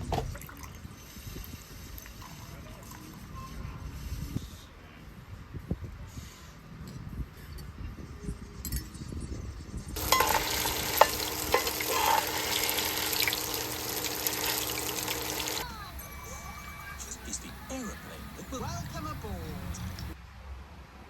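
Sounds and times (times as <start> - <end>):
food sizzling in a pan: 10.0 - 15.6.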